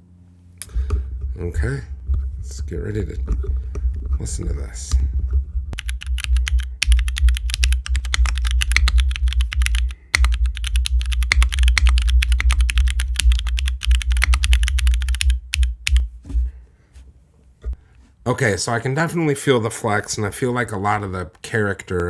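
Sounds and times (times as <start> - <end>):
mechanical keyboard typing: 5.8 - 16.1.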